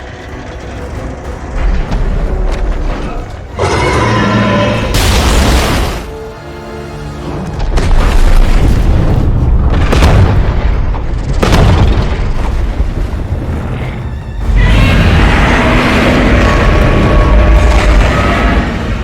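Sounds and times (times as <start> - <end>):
film music: 0.0 - 19.0
deep booming impacts and rumbling: 7.6 - 19.0.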